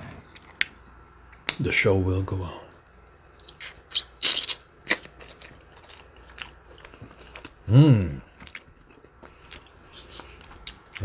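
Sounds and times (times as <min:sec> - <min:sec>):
person humming mmm: 0:07.7 - 0:08.3.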